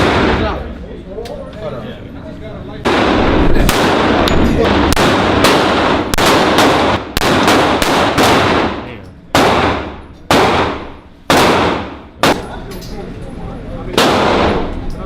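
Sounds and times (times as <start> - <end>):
echoing gunshots: 0.0 - 0.7, 2.8 - 12.6, 13.9 - 14.7.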